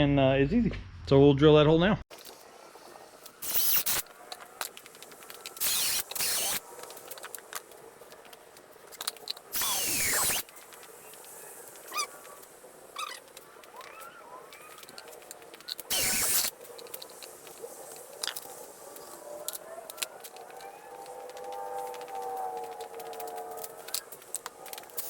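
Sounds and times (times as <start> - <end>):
power drill drilling into plastic: 5.6 - 6.6, 9.6 - 10.4.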